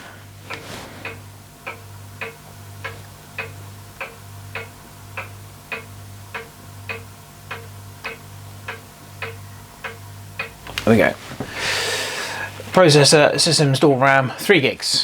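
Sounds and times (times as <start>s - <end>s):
low steady hum: 0.0s - 15.0s
mechanical ticking: 1.1s - 11.1s.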